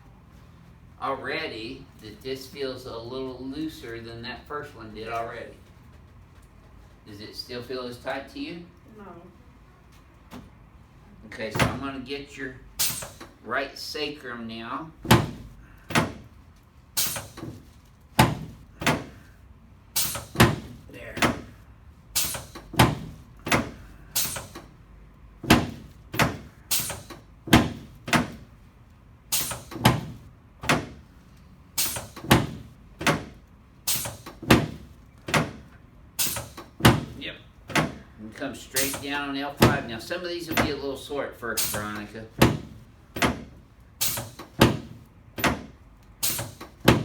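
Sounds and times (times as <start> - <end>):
sharp clacks of chiropractic table: 17.0 - 19.3, 20.0 - 21.6, 22.2 - 24.8, 25.4 - 28.5, 29.3 - 31.1, 31.8 - 38.1, 41.6 - 47.0.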